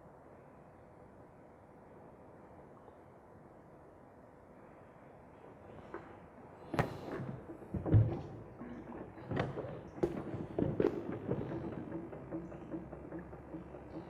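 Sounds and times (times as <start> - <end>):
equipment knocks and thuds: 6.8 - 14.0.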